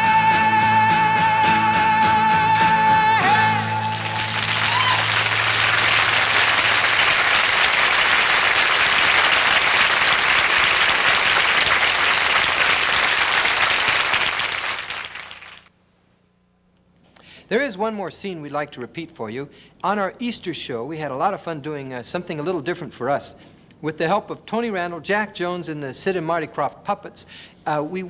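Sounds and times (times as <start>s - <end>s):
audience applauding: 3.6s - 15.7s.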